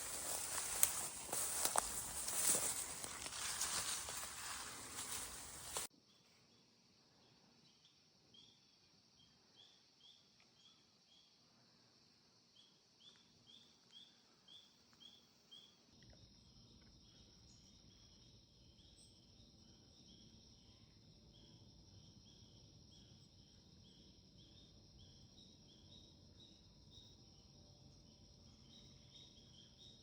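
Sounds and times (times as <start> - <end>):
rustling: 0.0 - 5.9
faint insect chorus: 0.0 - 30.0.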